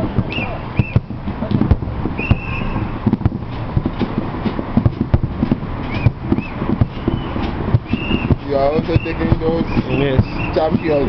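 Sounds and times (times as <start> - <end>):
fireworks bangs and booms: 0.0 - 11.0.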